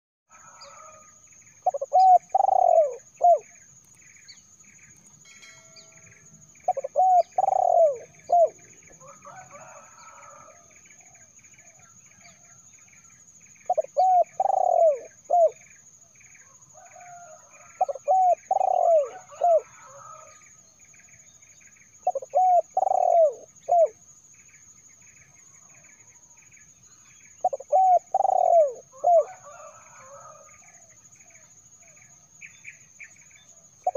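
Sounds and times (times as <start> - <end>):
dove cooing: 1.6 - 3.5, 6.7 - 10.5, 13.7 - 15.6, 17.1 - 20.3, 22.0 - 24.0, 27.4 - 30.4.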